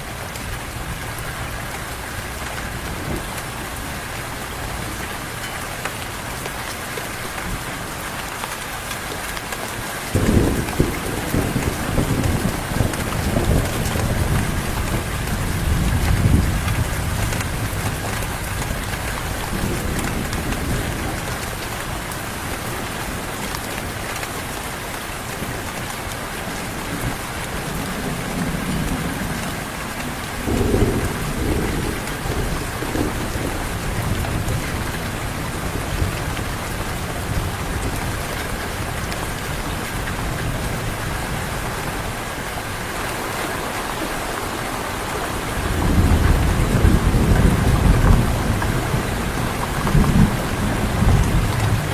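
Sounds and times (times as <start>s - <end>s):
heavy rain: 0.0s - 51.9s
thunder rumbling: 10.1s - 23.4s, 26.7s - 42.1s, 45.3s - 51.9s.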